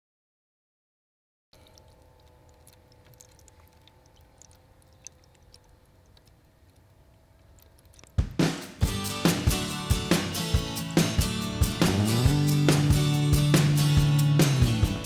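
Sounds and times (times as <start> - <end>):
soft ticks: 1.6 - 8.2
faint steady hum: 1.6 - 8.4
loud music with drums and guitar: 8.2 - 15.0.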